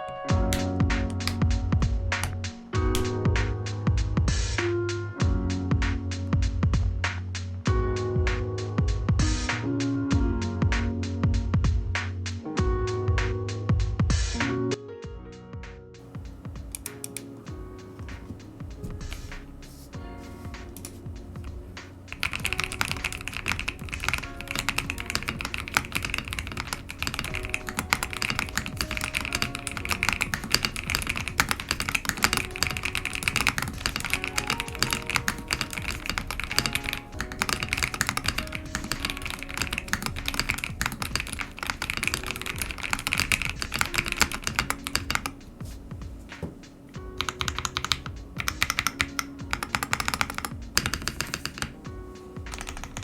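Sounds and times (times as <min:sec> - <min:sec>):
background music: 0:00.0 - 0:53.0
fast typing on mechanical keyboard: 0:22.1 - 0:45.4, 0:47.2 - 0:51.8, 0:52.4 - 0:53.0.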